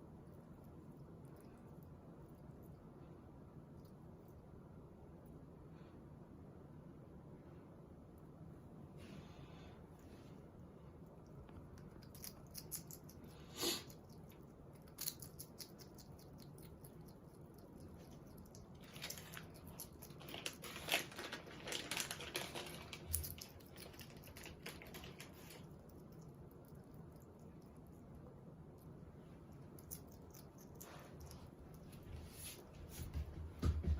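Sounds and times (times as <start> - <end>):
hedgehog crunching food: 10.9 - 32.6.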